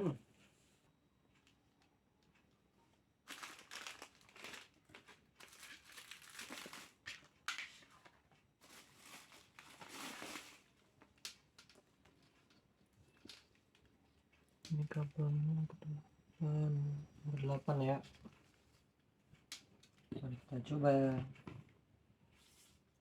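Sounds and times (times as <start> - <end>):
plastic packaging crinkling: 3.2 - 11.3.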